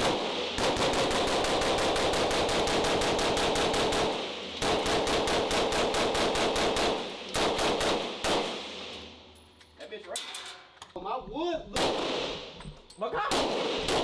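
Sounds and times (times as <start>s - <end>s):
rapid gunfire: 0.0s - 8.9s, 11.8s - 12.6s, 13.3s - 14.0s
single gunshots: 0.0s - 8.9s, 11.8s - 12.6s, 13.3s - 14.0s.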